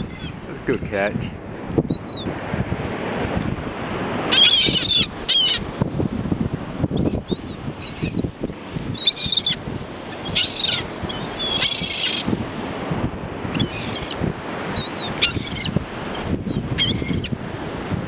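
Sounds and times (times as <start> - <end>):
seagulls calling: 0.0 - 1.1, 1.9 - 2.4, 4.3 - 5.7, 6.9 - 12.4, 13.5 - 17.4
wind buffeting microphone: 0.0 - 18.0.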